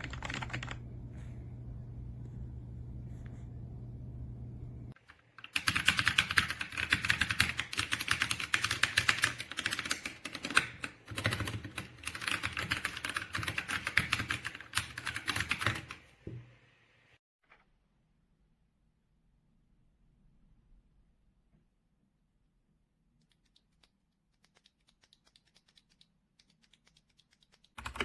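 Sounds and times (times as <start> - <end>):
fast typing on mechanical keyboard: 0.0 - 0.9, 5.1 - 16.0, 23.3 - 28.0
steady low hum: 0.0 - 5.0.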